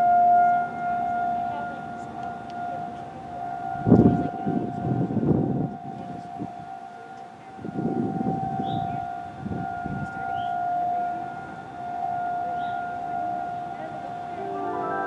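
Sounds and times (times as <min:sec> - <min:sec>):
warning siren steady tone: 0:00.0 - 0:15.0.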